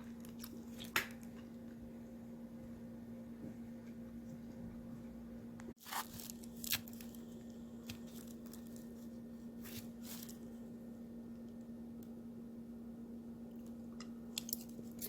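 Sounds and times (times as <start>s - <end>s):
person chewing crunchy salad: 0.0s - 1.5s
steady low hum: 0.0s - 15.0s.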